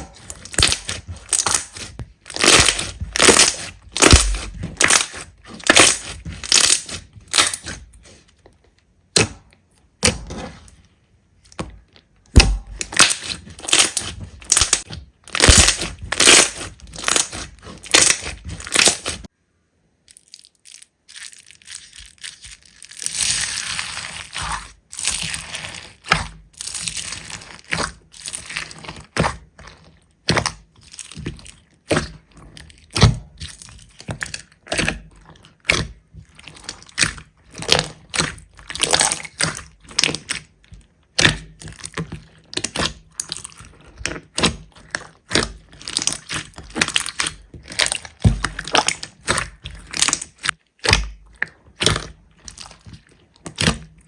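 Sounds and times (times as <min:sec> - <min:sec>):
slime crackling rustle: 0:00.0 - 0:08.3, 0:12.8 - 0:19.3, 0:20.1 - 0:29.9, 0:41.5 - 0:50.8
slime squelching by hand: 0:00.0 - 0:19.3, 0:20.1 - 0:54.0.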